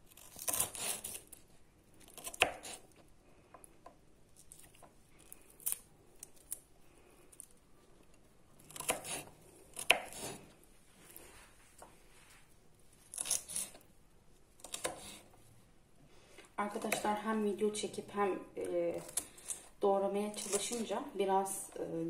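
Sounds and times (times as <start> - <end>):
knife chopping: 2.1 - 2.8, 8.7 - 10.5, 14.6 - 15.2.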